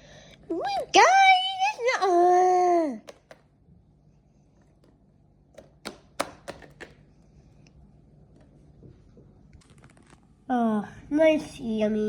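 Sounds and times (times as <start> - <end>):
faint room noise: 0.0 - 12.0
sharp clicks and taps: 3.0 - 3.5, 5.6 - 7.0.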